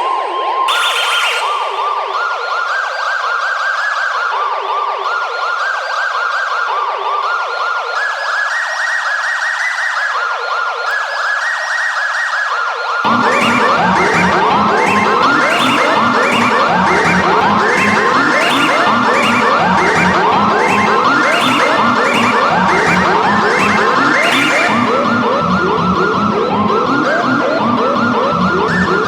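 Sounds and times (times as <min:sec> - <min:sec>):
electronic alarm warble: 0:00.7 - 0:02.7, 0:10.9 - 0:29.0
music: 0:13.1 - 0:29.0.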